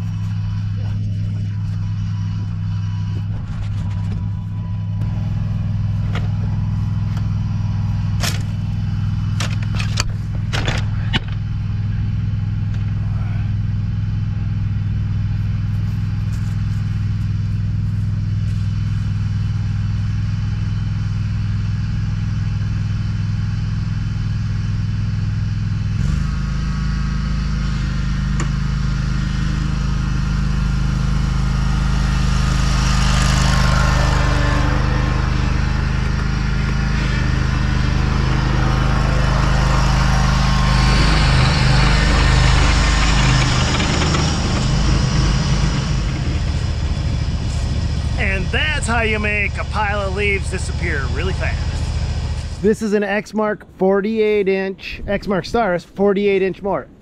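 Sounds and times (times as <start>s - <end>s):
mower engine running: 0.0s - 52.8s
sharp clattering knocks: 41.6s - 47.7s.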